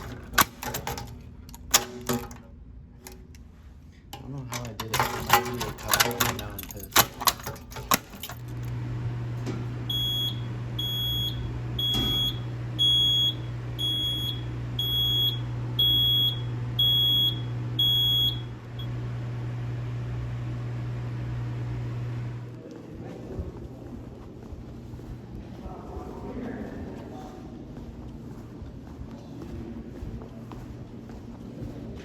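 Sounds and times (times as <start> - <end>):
steady low hum: 0.0 - 32.0
fire alarm beeps: 9.9 - 19.0.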